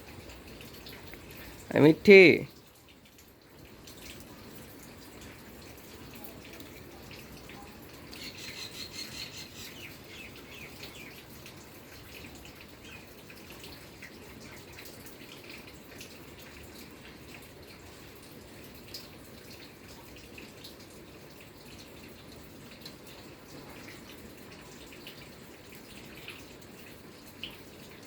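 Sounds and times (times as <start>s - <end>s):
parrot chirping call: 8.2s - 11.1s.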